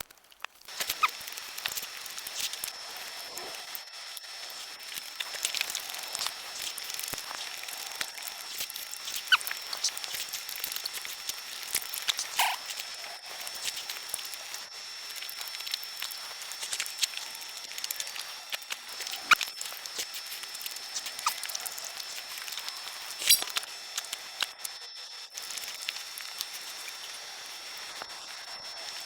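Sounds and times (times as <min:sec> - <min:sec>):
person chewing and lip smacking: 0:05.1 - 0:12.9, 0:15.5 - 0:24.5.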